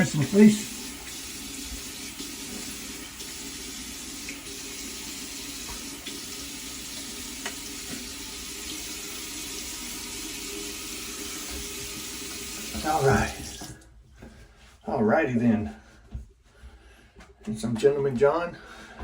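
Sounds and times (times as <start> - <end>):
sink tap running: 0.0 - 13.8.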